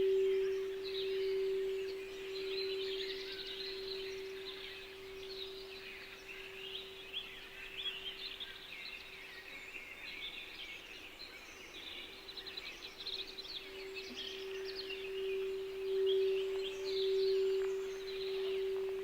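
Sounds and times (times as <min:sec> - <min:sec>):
steady low hum tone: 0:00.0 - 0:09.9, 0:12.2 - 0:19.0
songbirds chirping and twittering: 0:00.0 - 0:19.0.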